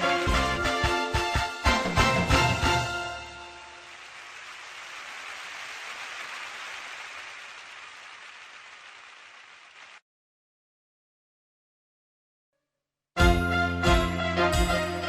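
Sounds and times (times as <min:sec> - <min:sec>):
steady hiss like rain: 0:03.6 - 0:10.0.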